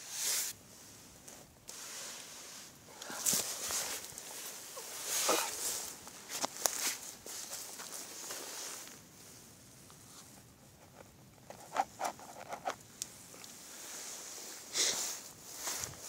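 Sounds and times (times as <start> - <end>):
footsteps on dry leaves and twigs: 3.0 - 8.9.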